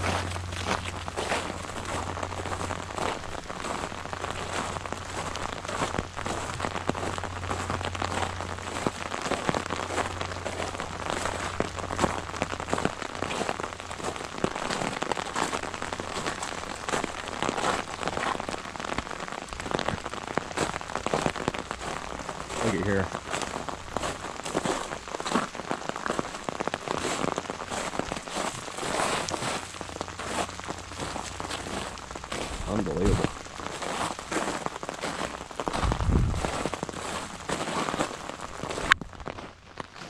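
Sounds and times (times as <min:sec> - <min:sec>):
low steady hum: 0:00.0 - 0:14.2
rain pattering: 0:00.0 - 0:40.0.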